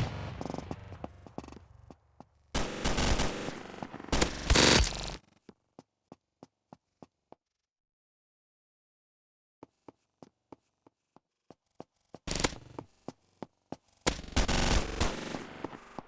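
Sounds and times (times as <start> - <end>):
bursts of harsh static: 2.6 - 5.2.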